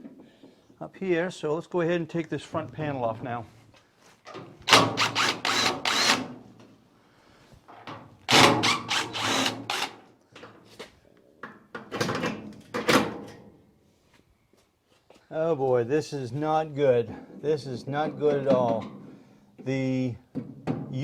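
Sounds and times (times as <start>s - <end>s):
clattering knocks and metal rattles: 11.4s - 13.5s, 18.0s - 19.2s, 20.3s - 21.0s.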